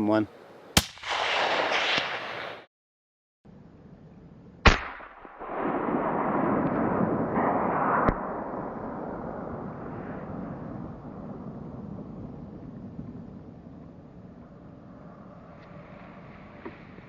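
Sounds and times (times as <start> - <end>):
rifle shot: 0.8 - 2.7, 4.6 - 10.3.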